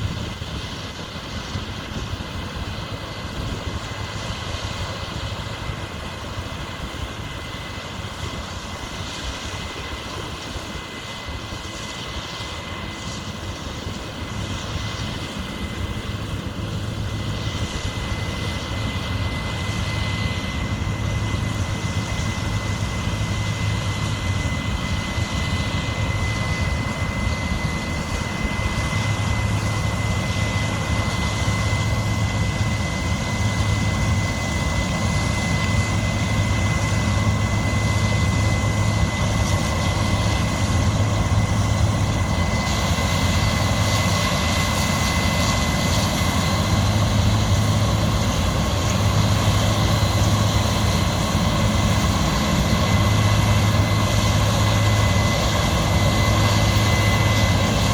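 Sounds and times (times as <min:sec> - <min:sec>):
diesel machinery running: 0:15.2 - 0:57.9.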